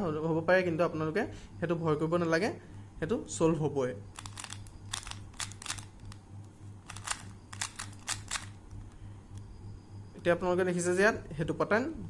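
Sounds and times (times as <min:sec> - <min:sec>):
puzzle cube clicking: 0:04.1 - 0:06.2, 0:06.9 - 0:08.6.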